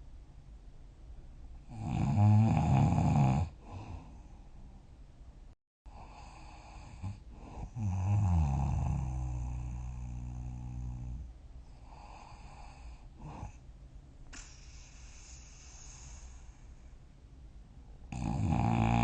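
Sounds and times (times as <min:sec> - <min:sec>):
person snoring: 0:01.7 - 0:04.2, 0:05.9 - 0:13.6, 0:18.1 - 0:19.0
quiet breathing: 0:03.5 - 0:04.9, 0:05.9 - 0:17.4.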